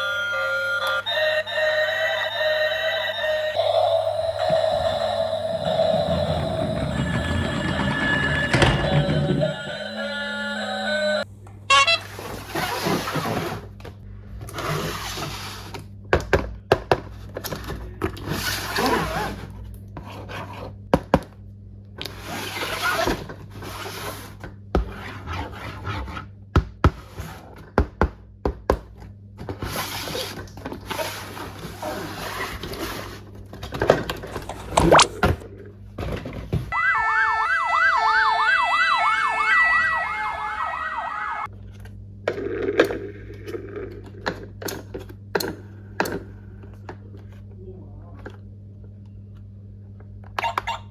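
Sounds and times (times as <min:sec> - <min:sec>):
beeping tones: 0:00.0 - 0:11.3
toy electronic siren: 0:00.0 - 0:12.1, 0:36.7 - 0:41.5.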